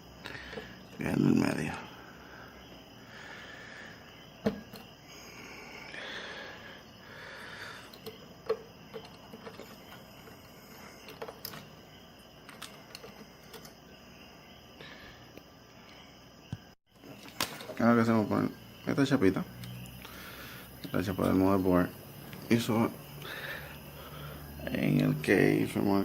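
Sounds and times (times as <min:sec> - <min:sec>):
clicks of computer parts handled: 0:07.9 - 0:10.4, 0:11.0 - 0:11.8, 0:12.4 - 0:13.8.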